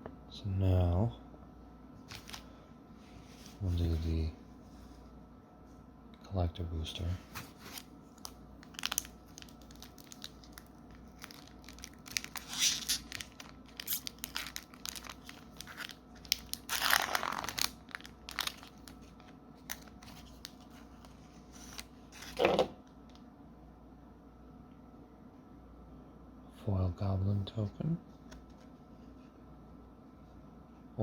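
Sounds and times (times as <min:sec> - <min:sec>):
foil wrapper tearing and crinkling: 0:07.7 - 0:20.6.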